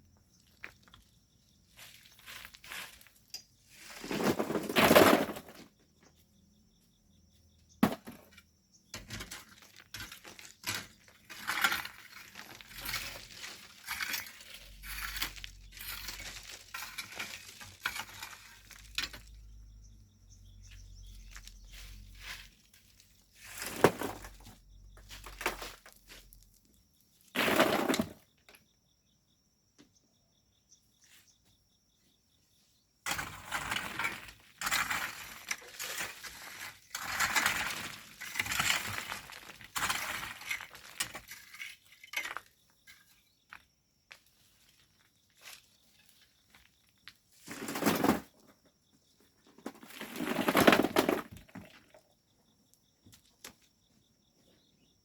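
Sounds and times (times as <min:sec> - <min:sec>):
gritty crunching and clinking: 0:00.1 - 0:06.0, 0:07.7 - 0:28.3, 0:33.0 - 0:48.5, 0:49.5 - 0:52.2
tools scraping sand and stones: 0:00.6 - 0:05.8, 0:07.8 - 0:19.8, 0:20.5 - 0:28.3, 0:33.1 - 0:43.4, 0:47.4 - 0:48.4, 0:49.6 - 0:52.0.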